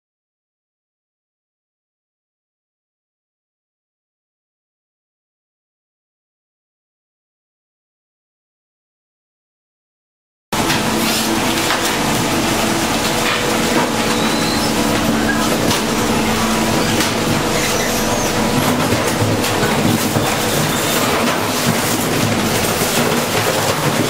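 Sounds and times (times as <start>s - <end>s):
low machine hum: 10.6s - 24.0s
machinery clattering: 10.6s - 24.0s.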